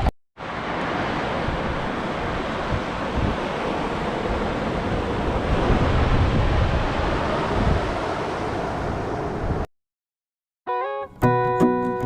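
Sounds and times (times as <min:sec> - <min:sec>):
ocean surf washing onto beach: 0:00.0 - 0:09.6
wind rumbling on microphone: 0:00.0 - 0:09.7.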